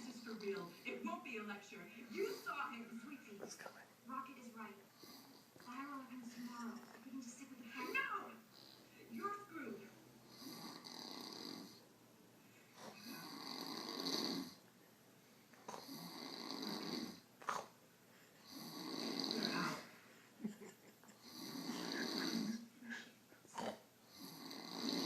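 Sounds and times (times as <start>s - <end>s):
man snoring: 10.3s - 11.8s, 13.0s - 14.6s, 15.7s - 17.2s, 18.4s - 19.9s, 21.2s - 22.6s, 23.6s - 25.0s.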